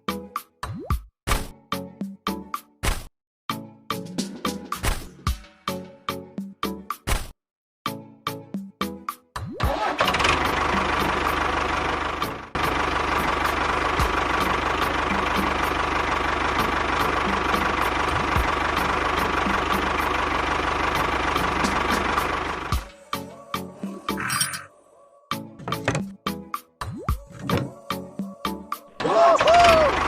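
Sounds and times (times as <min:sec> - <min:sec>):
small engine running: 0:09.7 - 0:22.9, 0:29.4 - 0:30.0.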